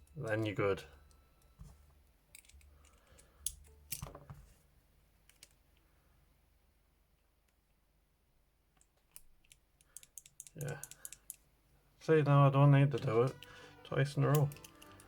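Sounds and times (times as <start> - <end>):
lock pick clicking in handcuff: 2.3 - 4.1, 8.8 - 11.4, 14.2 - 15.0.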